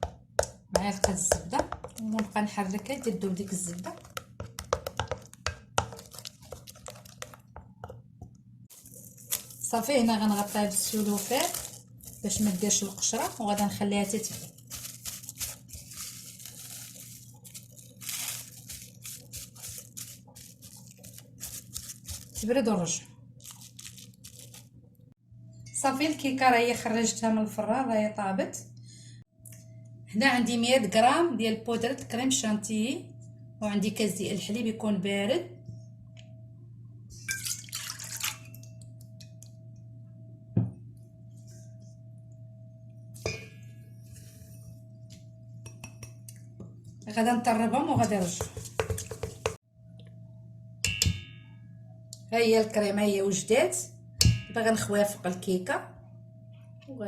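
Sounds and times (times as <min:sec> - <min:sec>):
cling film crinkling: 0:08.7 - 0:22.5, 0:23.4 - 0:24.7
steady low hum: 0:38.5 - 0:57.0.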